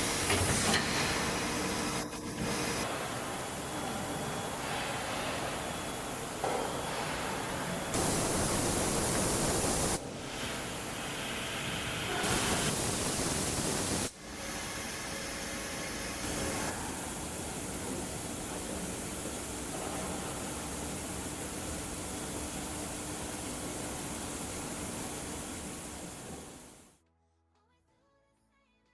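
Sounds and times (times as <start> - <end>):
machine cutting with coolant spray hiss: 8.0 - 26.9.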